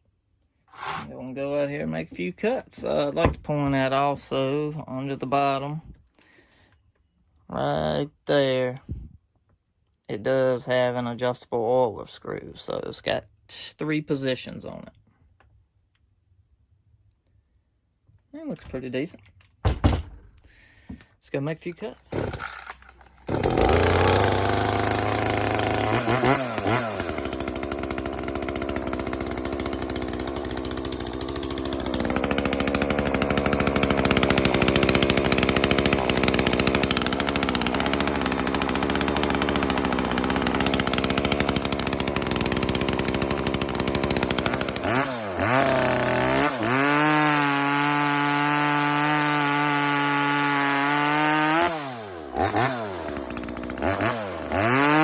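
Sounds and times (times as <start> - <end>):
chainsaw cutting wood: 0.7 - 4.6, 21.7 - 55.0.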